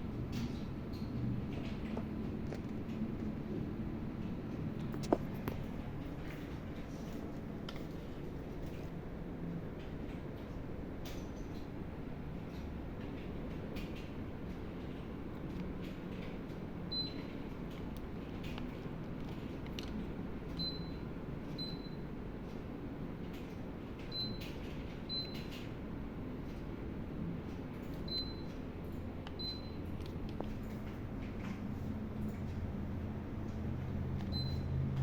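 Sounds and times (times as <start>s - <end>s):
air conditioner beeps: 0.0s - 3.0s, 14.2s - 35.0s
steady low hum: 0.0s - 35.0s.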